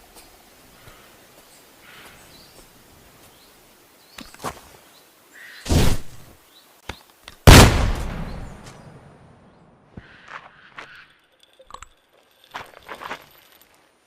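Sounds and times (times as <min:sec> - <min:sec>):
gunshots with echo: 0:07.5 - 0:08.6.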